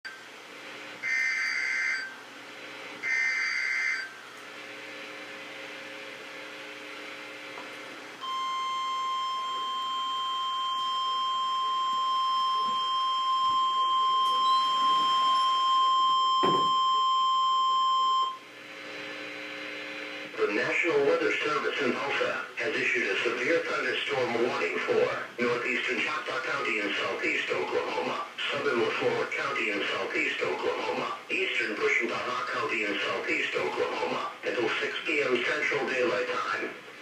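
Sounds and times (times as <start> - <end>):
steady warning alarm tone: 1.0 - 2.2, 3.0 - 4.2, 8.2 - 18.5.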